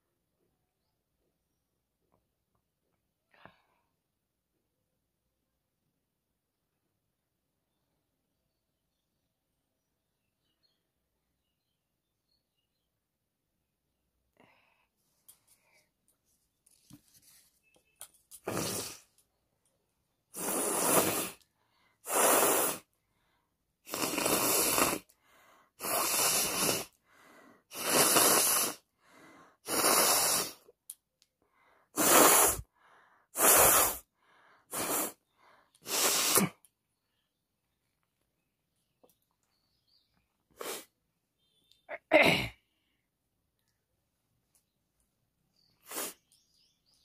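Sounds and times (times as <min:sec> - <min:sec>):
person sneezing loudly: 0:35.9 - 0:36.6, 0:41.9 - 0:42.6.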